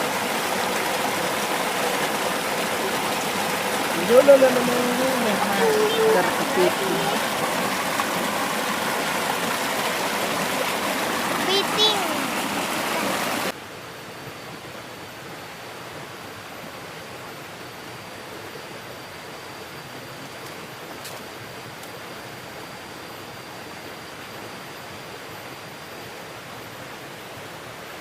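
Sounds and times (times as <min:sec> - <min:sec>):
stream water rushing: 0:00.0 - 0:28.0.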